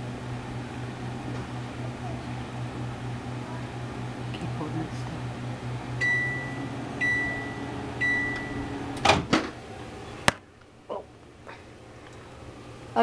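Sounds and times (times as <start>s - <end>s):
microwave oven humming: 0.0s - 13.0s
microwave beeps: 6.0s - 9.0s.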